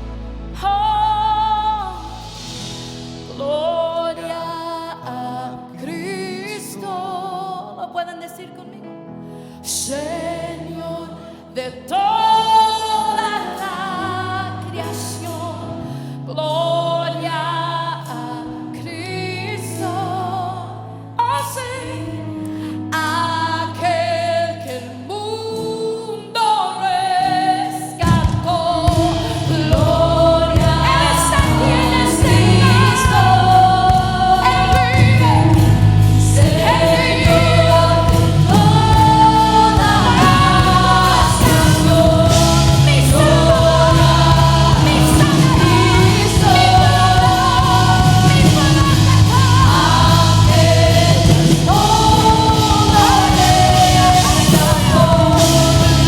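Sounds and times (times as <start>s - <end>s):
band with bass and drums: 0.0s - 3.6s, 28.0s - 56.0s
group singing worship song: 9.6s - 20.8s, 27.0s - 56.0s.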